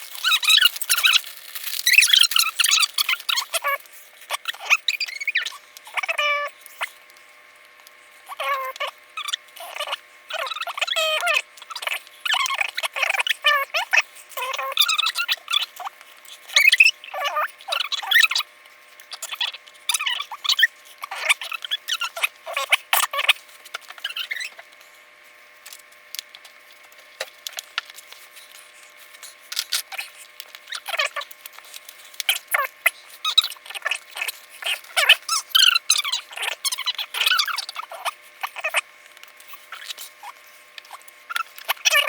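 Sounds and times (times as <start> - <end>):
plastic pieces rattling and clicking: 0.0 - 3.6.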